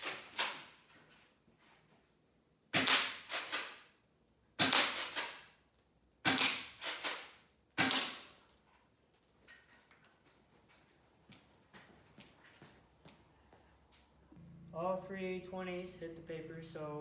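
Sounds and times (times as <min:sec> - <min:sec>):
airsoft gun shots: 0:02.8 - 0:03.8, 0:04.6 - 0:05.4, 0:06.2 - 0:08.4.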